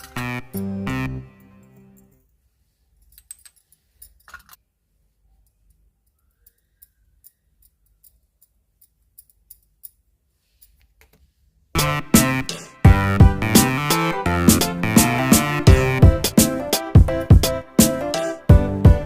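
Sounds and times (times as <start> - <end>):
music: 0.0 - 2.1, 11.8 - 19.0
utensils clicking and tapping: 5.4 - 11.2.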